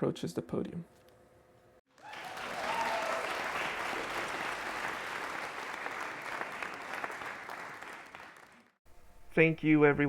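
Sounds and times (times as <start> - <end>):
crowd applauding: 1.9 - 8.8.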